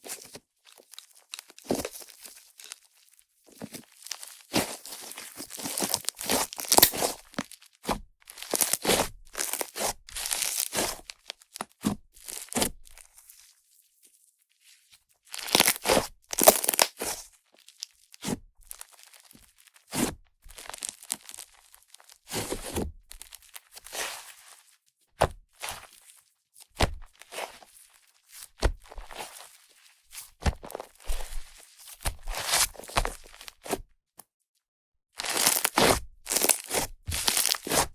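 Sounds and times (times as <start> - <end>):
slime squished by hand: 5.7 - 7.2, 15.4 - 16.9
crackly popping of slime: 5.8 - 7.2, 15.4 - 17.0.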